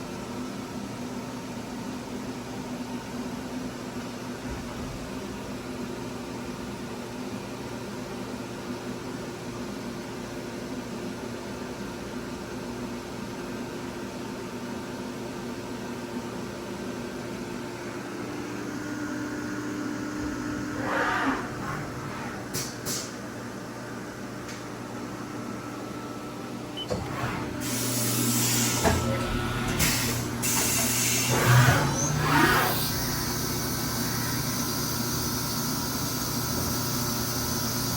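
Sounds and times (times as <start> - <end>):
short rising whir: 20.3 - 23.1
milling machine humming: 25.2 - 37.9.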